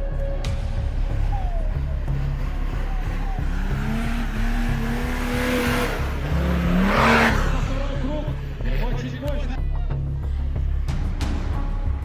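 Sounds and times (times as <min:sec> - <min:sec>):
background music: 0:00.0 - 0:12.0
engine revving: 0:00.0 - 0:12.0.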